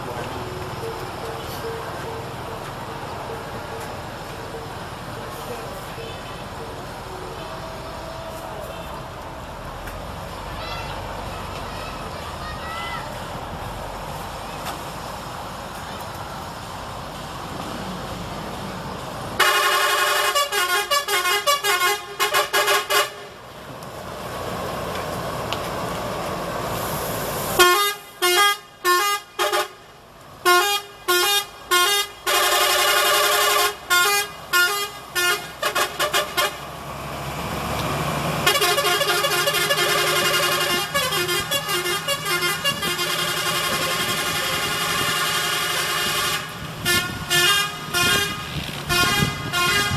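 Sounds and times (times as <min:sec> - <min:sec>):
bus horn playing melodic phrases: 0:19.4 - 0:23.4, 0:27.6 - 0:36.9, 0:38.4 - 0:49.9.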